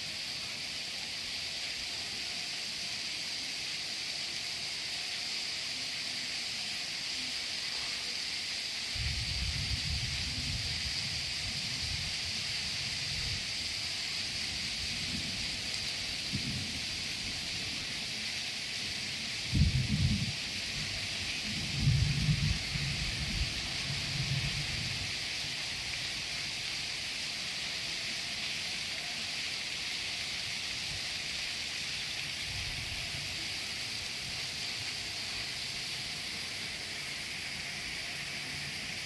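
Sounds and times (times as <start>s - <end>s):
steady rain falling: 0.0s - 39.0s.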